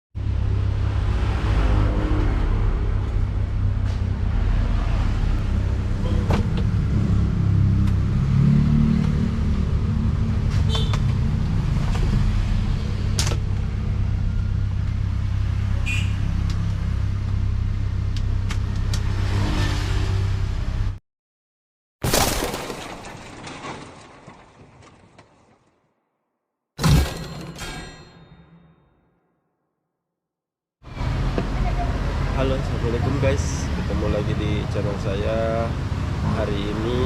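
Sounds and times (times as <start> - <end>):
car rumbling on the move: 0.2 - 21.0.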